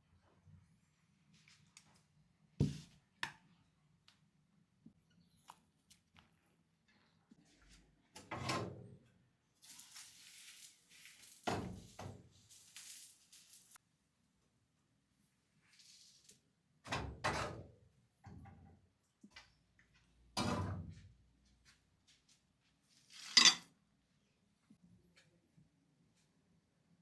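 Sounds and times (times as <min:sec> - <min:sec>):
objects knocking and thunking: 0:02.6 - 0:02.9.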